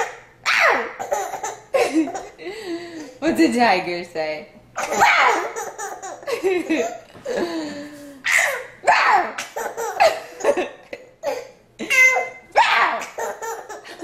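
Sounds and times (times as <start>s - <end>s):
toddler laughing: 0.0s - 2.4s, 4.8s - 12.4s, 13.0s - 14.0s.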